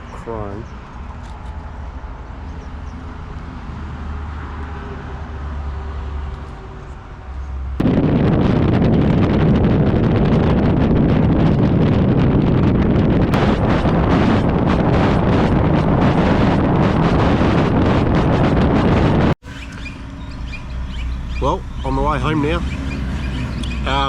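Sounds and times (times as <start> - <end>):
low steady rumble: 6.8 - 24.0
wind buffeting microphone: 6.9 - 24.0.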